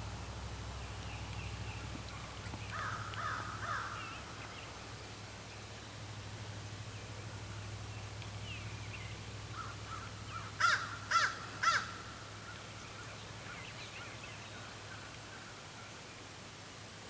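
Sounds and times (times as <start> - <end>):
crow cawing: 2.7 - 4.0, 9.6 - 12.0.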